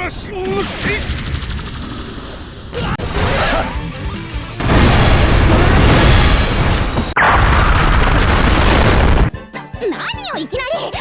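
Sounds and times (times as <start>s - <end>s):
booming crashing effects: 4.6s - 9.3s.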